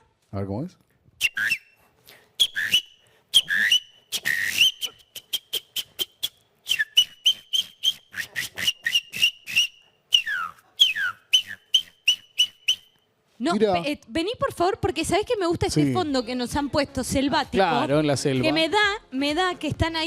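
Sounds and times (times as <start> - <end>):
man whistling birdsong: 1.2 - 1.8, 2.4 - 13.0.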